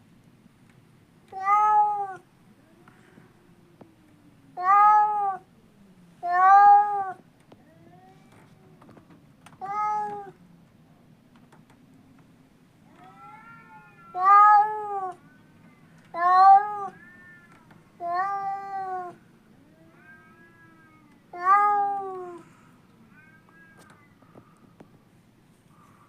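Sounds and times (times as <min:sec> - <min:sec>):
faint cat meows: 0:01.3 - 0:05.6, 0:06.2 - 0:10.4, 0:12.8 - 0:24.7
cat meowing loudly: 0:01.4 - 0:02.2, 0:04.6 - 0:05.4, 0:09.6 - 0:10.4, 0:12.9 - 0:15.2, 0:16.1 - 0:22.5.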